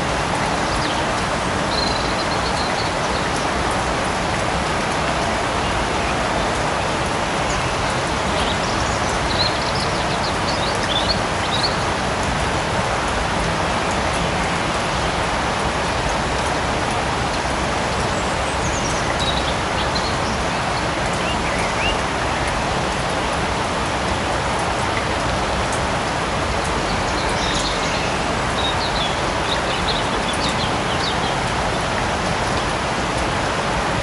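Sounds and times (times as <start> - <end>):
light rain falling: 0.0 - 34.0.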